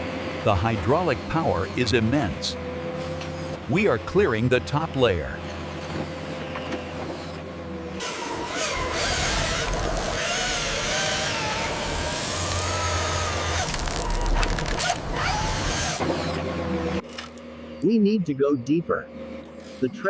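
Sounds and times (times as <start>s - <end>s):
excavator digging noise with whine: 0.0s - 20.0s
hydraulic hum: 0.0s - 20.0s.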